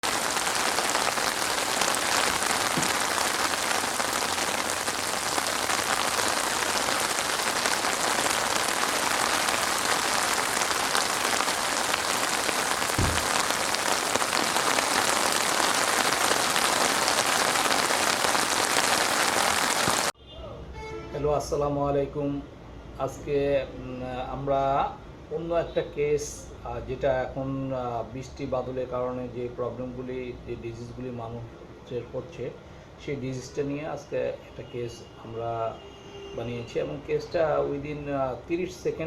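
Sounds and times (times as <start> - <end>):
steady rain falling: 0.0 - 20.2.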